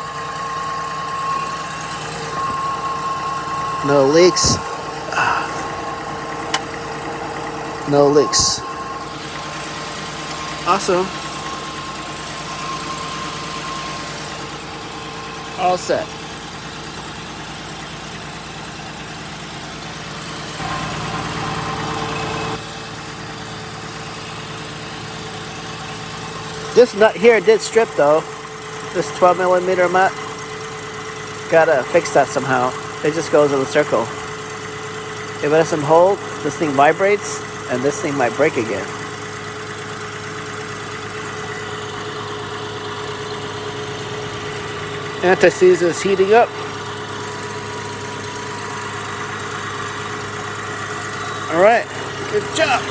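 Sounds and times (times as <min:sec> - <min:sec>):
loud steady hum: 0:00.0 - 0:16.8, 0:51.1 - 0:52.9
car engine idling: 0:00.0 - 0:52.9.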